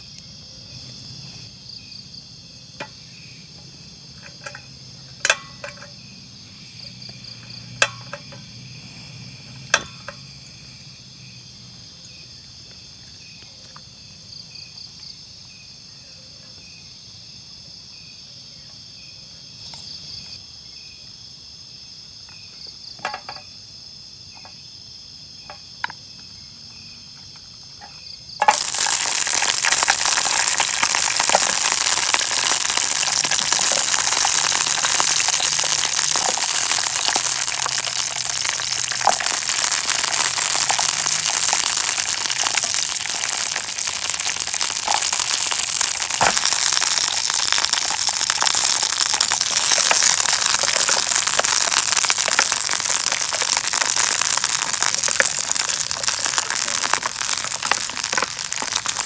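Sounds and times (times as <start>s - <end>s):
loud dense crackling hiss: 0.0s - 5.3s, 6.0s - 11.8s, 28.4s - 59.0s
crickets trilling: 0.0s - 59.0s.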